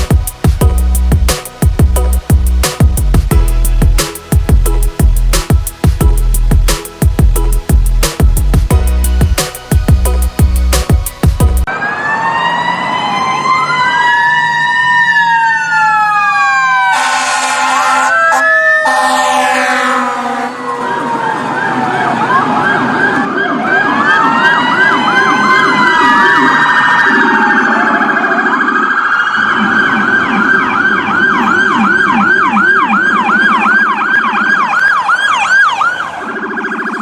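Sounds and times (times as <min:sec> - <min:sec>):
electronic emergency siren: 0:11.7 - 0:37.0.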